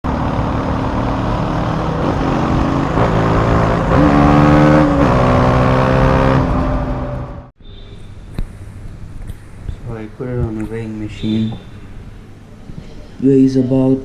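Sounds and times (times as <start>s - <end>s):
motorcycle engine revving: 0.1s - 7.5s.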